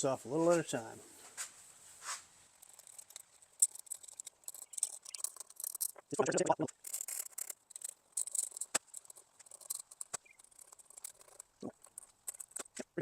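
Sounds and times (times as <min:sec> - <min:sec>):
sharp clicks: 0:02.6 - 0:12.9.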